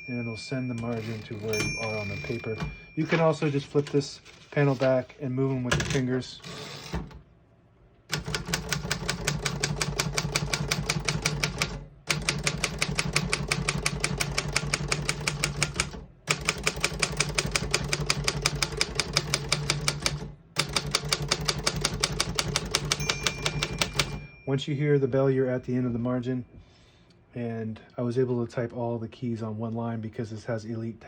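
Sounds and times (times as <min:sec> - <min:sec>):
typewriter margin bell: 0:00.0 - 0:04.4, 0:08.2 - 0:24.7
typewriter keystrokes: 0:08.1 - 0:24.3.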